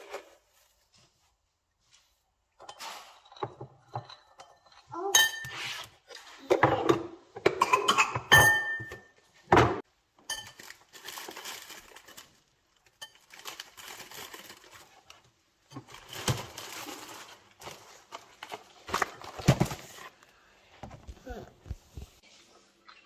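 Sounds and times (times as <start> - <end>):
rustling: 10.6 - 22.4.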